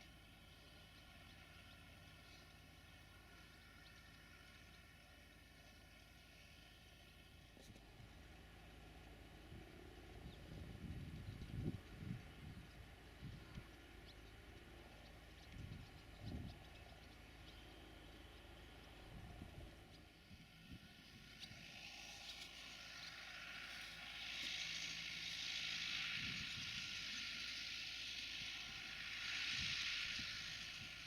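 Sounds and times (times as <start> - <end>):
distant tractor engine hum: 0.0 - 31.0
wind buffeting microphone: 10.2 - 13.7, 15.5 - 16.6.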